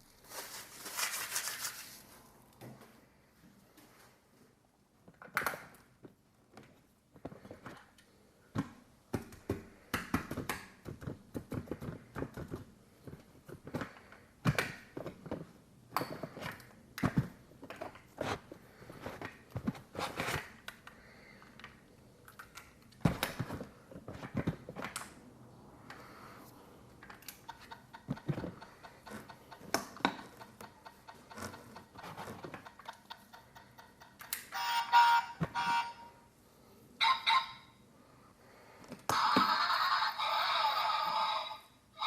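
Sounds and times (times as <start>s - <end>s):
plastic rustling: 0.0s - 2.4s.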